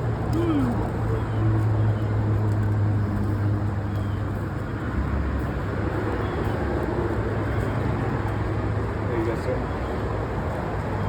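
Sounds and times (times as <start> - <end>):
faint voices: 0.2 - 1.3.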